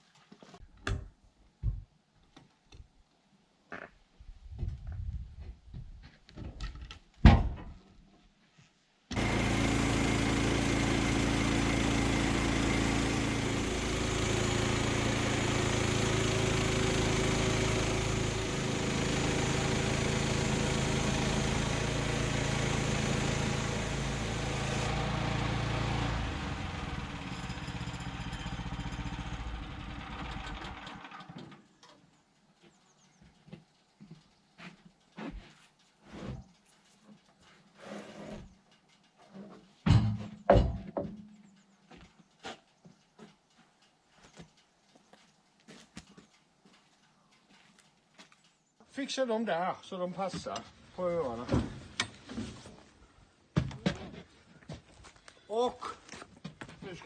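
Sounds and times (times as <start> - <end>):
small gasoline engine running: 9.1 - 31.7.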